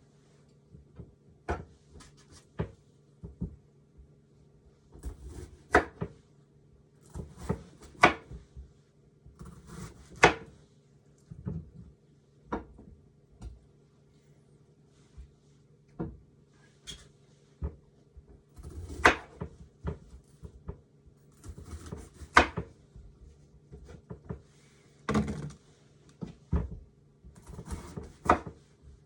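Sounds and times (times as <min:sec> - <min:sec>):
kitchen knocks and clunks: 0:00.8 - 0:03.6, 0:16.0 - 0:16.2, 0:25.1 - 0:25.6, 0:26.2 - 0:26.8.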